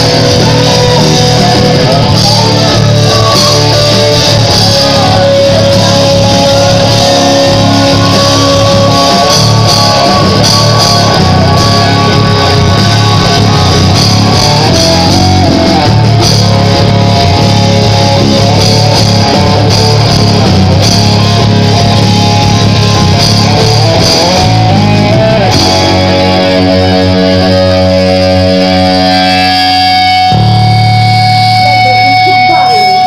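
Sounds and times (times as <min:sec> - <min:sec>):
music with guitar and drums: 0:00.0 - 0:33.0.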